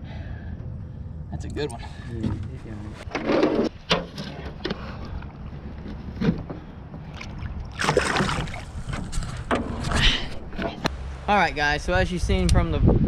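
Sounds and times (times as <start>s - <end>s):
wind buffeting microphone: 6.8s - 13.0s.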